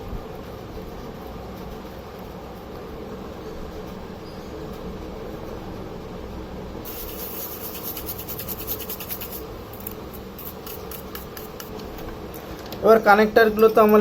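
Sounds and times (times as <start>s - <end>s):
steady low hum: 0.0s - 14.0s
hands scraping metal heatsink: 6.8s - 11.8s.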